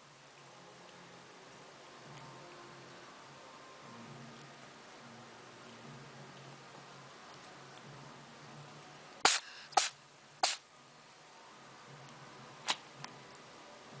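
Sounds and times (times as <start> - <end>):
animal sneezing: 9.3 - 10.6.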